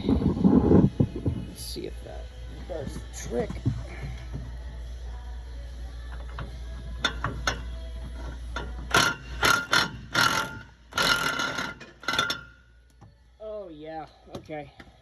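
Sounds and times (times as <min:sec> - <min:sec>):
ratchet wrench clicking: 0:08.2 - 0:12.6.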